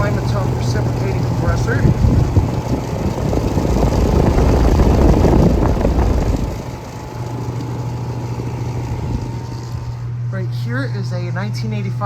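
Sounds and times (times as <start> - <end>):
air conditioner rushing noise: 0.0 - 11.8
compressor low hum: 0.0 - 12.0.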